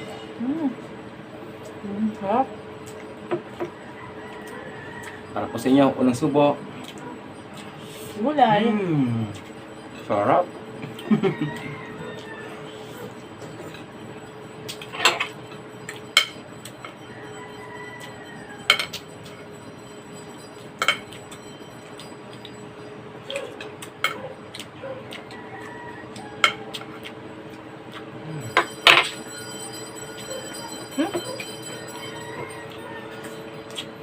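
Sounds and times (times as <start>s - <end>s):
cutlery clinking against dishes: 14.6s - 19.5s, 20.2s - 25.3s, 26.2s - 27.2s, 27.9s - 29.3s.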